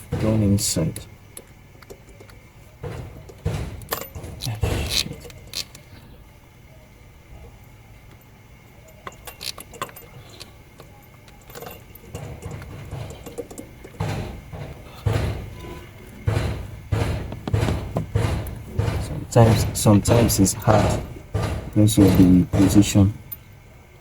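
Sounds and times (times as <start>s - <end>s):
dull thumps: 0.0s - 1.1s, 2.2s - 5.7s, 11.8s - 23.4s
metal parts clicking and knocking: 0.0s - 6.2s, 8.1s - 23.6s.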